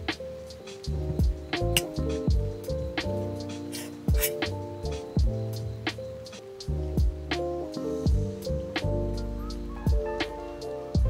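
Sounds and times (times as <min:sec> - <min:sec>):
hi-hat ticks: 0:00.0 - 0:11.0
deep kick drum: 0:00.9 - 0:03.0, 0:05.2 - 0:05.4, 0:06.9 - 0:07.3, 0:08.1 - 0:08.9, 0:09.9 - 0:10.1.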